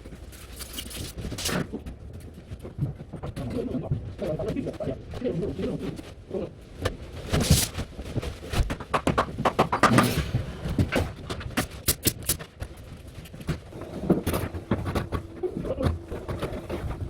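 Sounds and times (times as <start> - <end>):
sharp knocks and clicks: 8.6 - 17.0.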